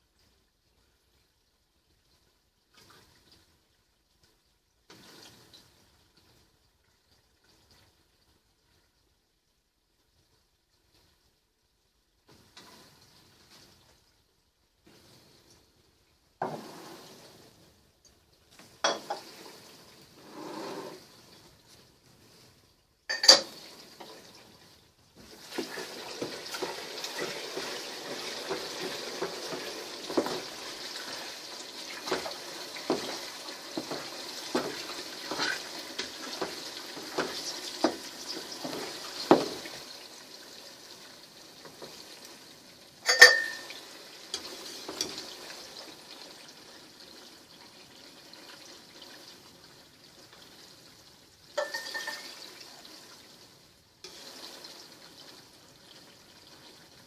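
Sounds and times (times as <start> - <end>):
fat sizzling in a pot: 14.7 - 57.0
utensil knocking and scraping: 32.0 - 39.7.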